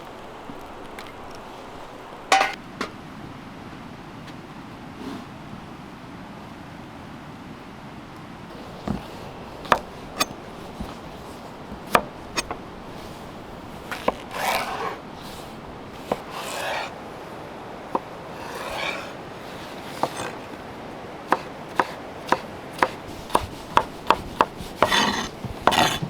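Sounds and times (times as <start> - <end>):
knife scraping strokes: 8.5 - 20.7, 21.3 - 26.0
knife tapping on wooden board: 8.9 - 12.6, 21.3 - 26.0.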